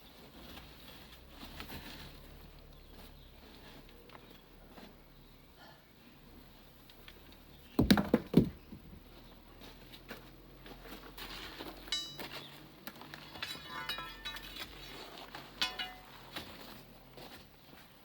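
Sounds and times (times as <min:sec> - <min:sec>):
stones knocking and clattering: 0:07.8 - 0:09.0, 0:11.9 - 0:16.3.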